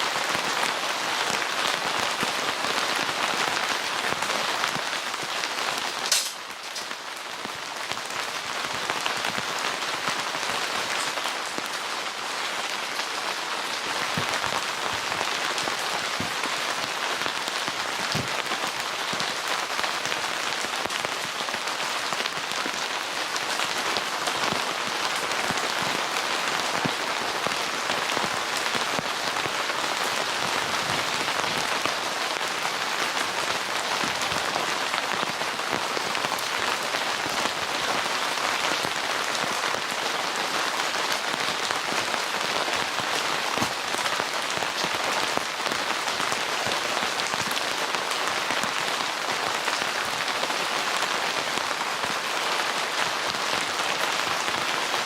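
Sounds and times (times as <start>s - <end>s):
rain drops ticking on a tent: 0.0s - 55.0s.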